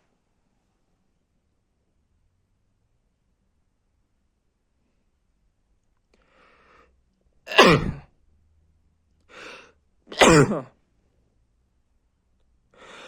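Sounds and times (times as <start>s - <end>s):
man sneezing: 7.5s - 8.1s, 10.1s - 10.7s.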